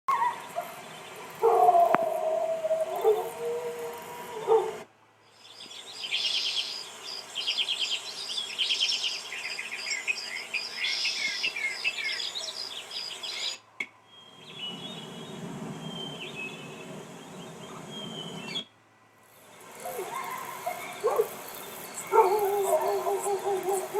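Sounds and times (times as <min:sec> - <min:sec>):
dog howling: 0:00.1 - 0:00.8, 0:01.4 - 0:04.8, 0:19.8 - 0:21.4, 0:22.0 - 0:23.9
bird chirps and trills: 0:00.1 - 0:23.9.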